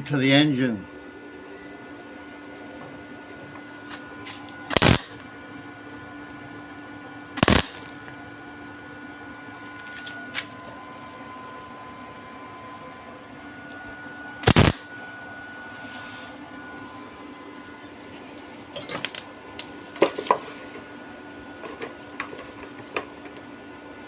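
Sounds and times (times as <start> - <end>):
welding burst: 4.7 - 5.2, 7.4 - 8.0, 14.4 - 14.9
metal clicks and clinks: 18.8 - 19.2.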